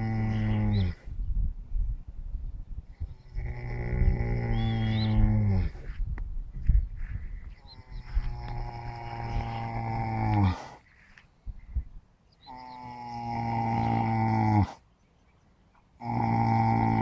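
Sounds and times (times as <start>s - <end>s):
cattle mooing: 0.0s - 1.0s, 3.4s - 5.8s, 8.0s - 10.6s, 12.5s - 14.8s, 16.0s - 17.0s.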